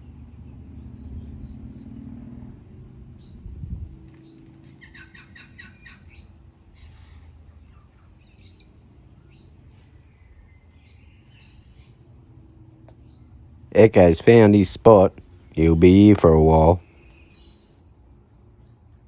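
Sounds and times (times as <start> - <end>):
birds chirping: 13.0 - 17.9.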